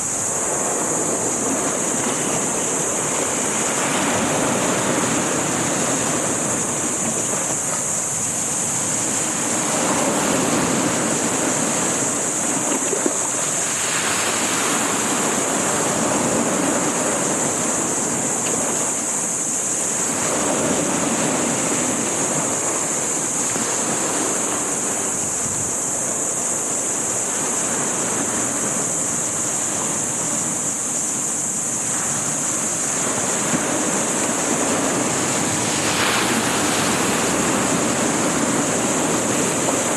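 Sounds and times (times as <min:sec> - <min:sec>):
sea surf breaking: 0:00.0 - 0:39.9
steady high hiss: 0:00.0 - 0:39.9
wind on microphone: 0:00.0 - 0:39.9.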